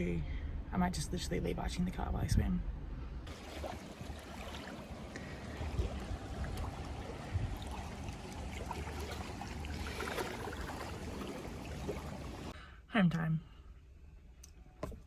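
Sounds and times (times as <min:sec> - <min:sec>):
sea water rushing: 0:03.3 - 0:12.6
small water splashes: 0:03.3 - 0:12.6.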